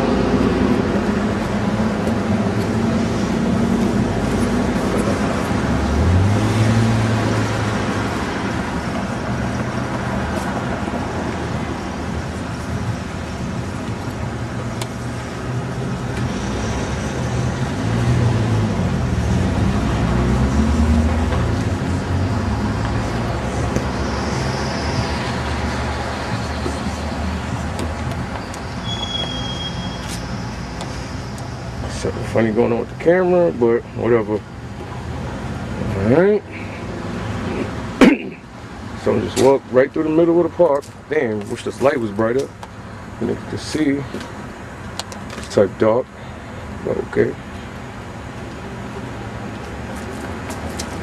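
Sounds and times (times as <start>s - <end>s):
vehicles passing: 0.0s - 51.0s.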